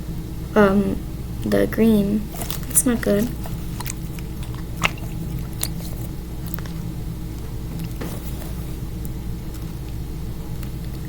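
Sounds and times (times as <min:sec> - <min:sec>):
steady low hum: 0:00.0 - 0:11.0
squishy toy squishing: 0:02.3 - 0:06.9.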